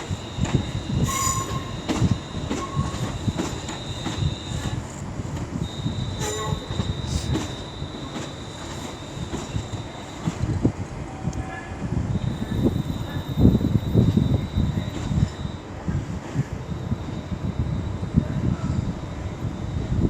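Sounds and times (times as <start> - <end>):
high-pitched wheel squeal: 0.0 - 4.8, 5.6 - 10.3
train wheels rumbling over track: 0.0 - 20.0.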